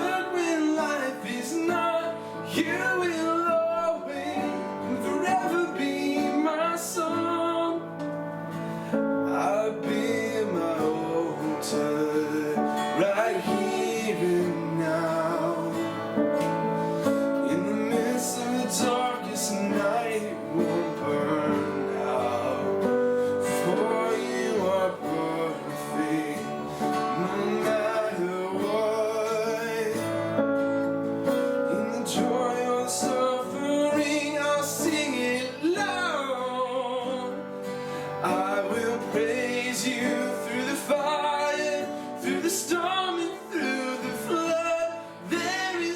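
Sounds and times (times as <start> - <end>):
strummed acoustic guitar: 0.0 - 45.9
voices singing: 9.3 - 30.0, 38.2 - 45.9.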